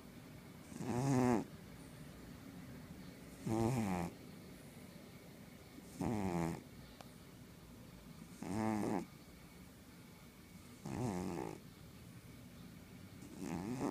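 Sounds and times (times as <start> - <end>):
cat snoring: 0.6 - 1.5, 3.4 - 4.2, 5.8 - 6.6, 8.4 - 9.1, 10.8 - 11.6, 13.2 - 13.9.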